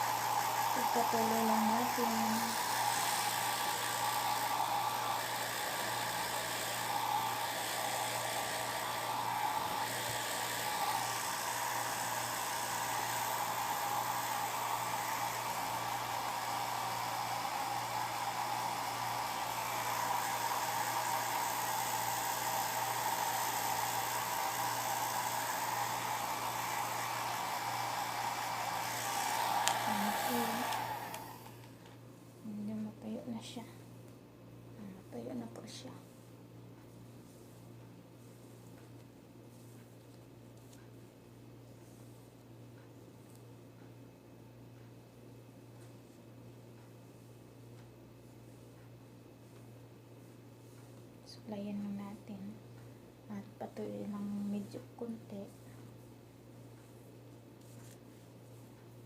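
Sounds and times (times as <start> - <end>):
hair dryer blowing: 0.0 - 31.7.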